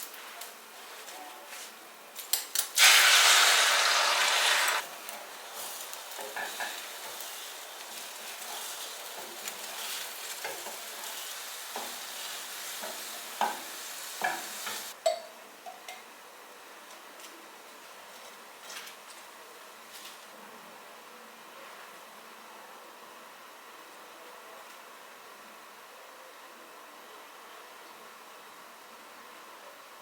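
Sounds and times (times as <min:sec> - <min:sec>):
food sizzling in a pan: 0:02.5 - 0:15.0.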